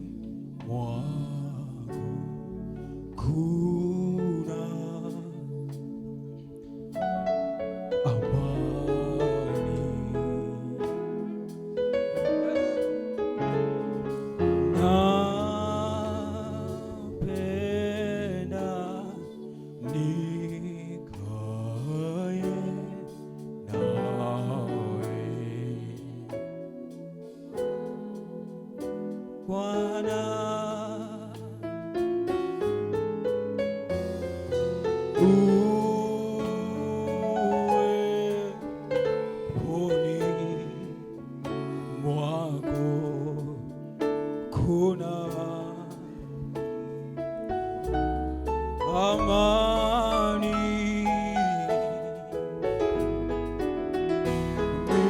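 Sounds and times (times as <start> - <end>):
person singing: 0.0 - 28.5, 29.4 - 31.6, 34.0 - 55.0
slow keyboard chords: 0.0 - 55.0
held sung notes with vibrato: 7.9 - 11.4, 47.9 - 52.3.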